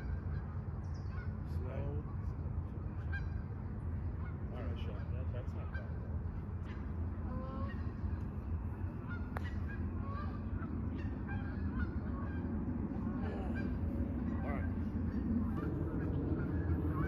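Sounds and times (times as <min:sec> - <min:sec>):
low rumble: 0:06.0 - 0:17.0.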